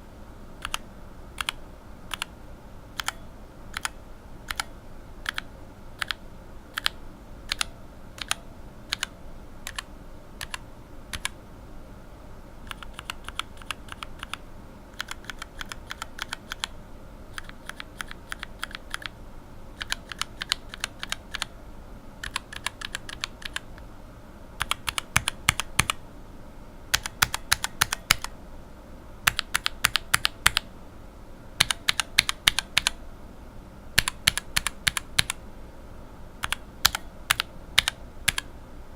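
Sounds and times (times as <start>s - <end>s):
mechanical keyboard keystrokes: 0.6s - 0.8s, 1.4s - 2.3s, 3.0s - 5.4s, 6.8s - 11.4s, 12.7s - 14.4s, 15.0s - 16.7s, 17.3s - 19.1s, 19.8s - 21.5s, 22.2s - 23.6s, 24.6s - 26.0s, 26.9s - 28.3s, 29.3s - 30.6s, 31.6s - 33.0s, 34.0s - 35.4s, 36.4s - 38.5s.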